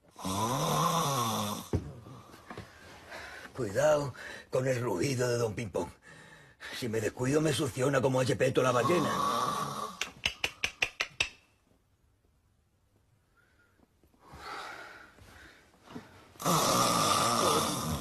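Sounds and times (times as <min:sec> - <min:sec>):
person imitating snoring: 0:00.1 - 0:01.8, 0:08.7 - 0:10.1, 0:16.4 - 0:18.0.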